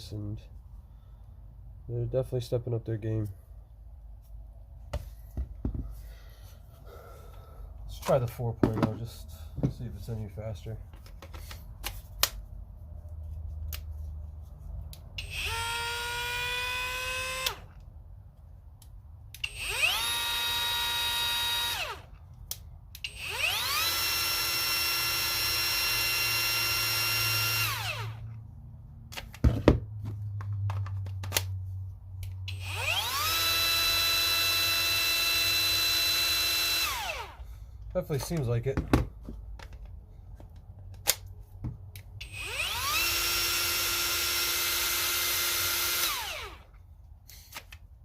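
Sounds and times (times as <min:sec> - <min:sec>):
cordless power tool whining: 0:15.2 - 0:17.8, 0:19.4 - 0:22.2, 0:23.0 - 0:28.3, 0:32.5 - 0:37.5, 0:42.2 - 0:46.8.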